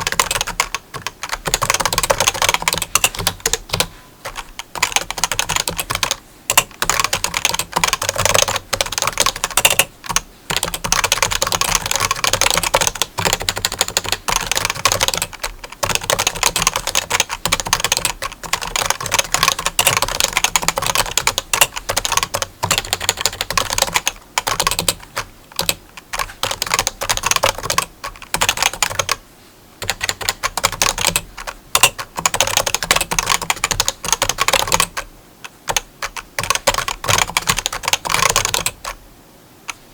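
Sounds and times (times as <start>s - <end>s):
rapid dense clicking: 29.8s - 35.1s, 35.7s - 39.0s.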